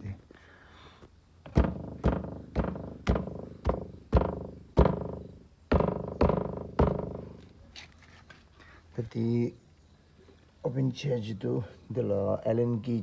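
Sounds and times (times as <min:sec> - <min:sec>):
car door knocking: 0:01.5 - 0:07.4.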